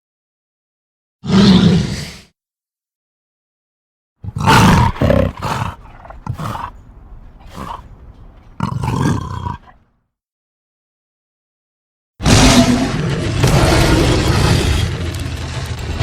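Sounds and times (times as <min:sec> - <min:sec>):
creature roaring: 0:01.2 - 0:02.3, 0:04.2 - 0:06.8, 0:07.4 - 0:07.9, 0:08.6 - 0:09.8, 0:12.2 - 0:15.2
creature growling: 0:04.2 - 0:06.8, 0:07.4 - 0:07.9, 0:08.5 - 0:09.8.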